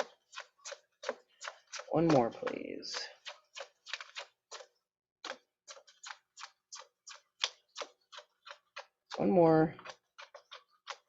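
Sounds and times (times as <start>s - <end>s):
cards being shuffled by hand: 0.0s - 8.0s.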